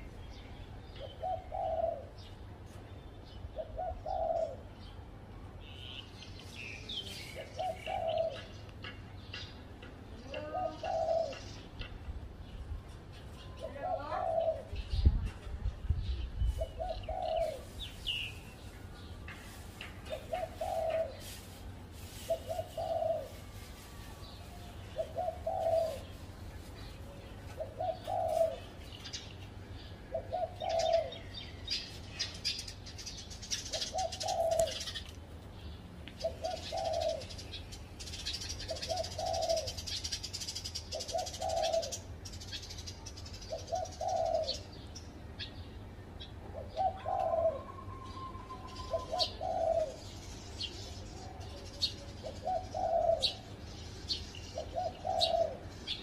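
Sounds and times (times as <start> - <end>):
small birds chirping: 0.0 - 56.0
dove cooing: 1.0 - 2.2, 3.5 - 4.7, 7.3 - 8.6, 10.3 - 11.6, 13.6 - 14.9, 16.5 - 18.0, 20.1 - 23.5, 24.8 - 26.2, 27.0 - 29.0, 30.1 - 31.4, 33.6 - 35.0, 36.2 - 42.7, 43.4 - 44.8, 46.5 - 50.2, 51.5 - 56.0.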